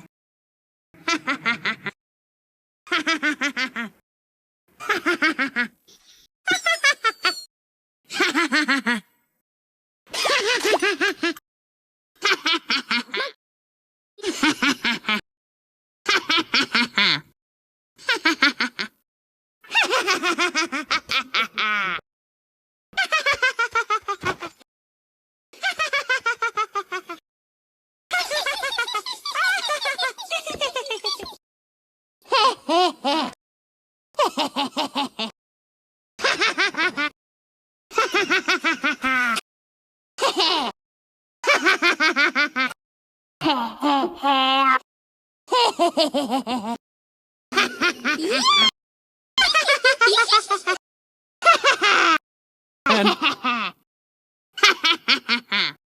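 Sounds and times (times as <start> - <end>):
cartoon girl laughing: 2.9 - 4.0, 4.8 - 5.7, 6.5 - 7.5, 8.1 - 9.1, 10.1 - 11.4, 12.2 - 13.4, 19.7 - 22.0, 25.6 - 27.2, 28.1 - 31.4, 32.3 - 33.4, 34.2 - 35.4, 36.2 - 37.2, 37.9 - 39.4, 40.2 - 40.8, 41.4 - 42.8, 43.4 - 44.8, 45.5 - 46.8, 47.5 - 48.8, 49.4 - 50.8, 51.4 - 52.2, 52.9 - 53.8, 54.6 - 55.8.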